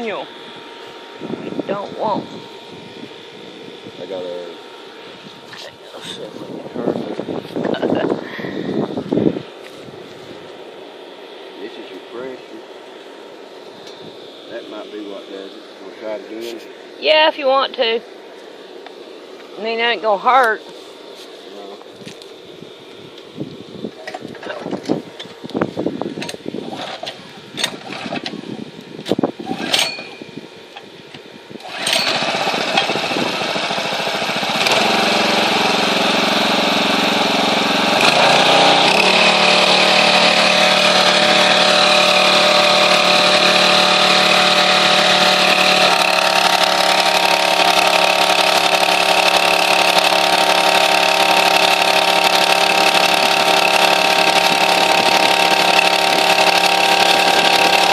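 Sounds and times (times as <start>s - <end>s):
pressure washer running: 0.0s - 18.0s, 31.5s - 57.9s.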